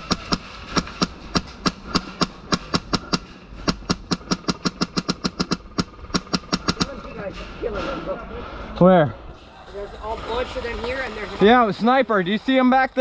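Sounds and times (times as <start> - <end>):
airsoft gun rapid fire: 0.0 - 7.1.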